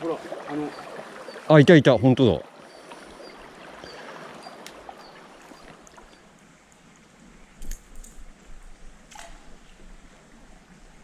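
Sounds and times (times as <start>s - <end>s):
river water rushing: 0.0s - 7.2s
faint ticks: 4.4s - 8.3s.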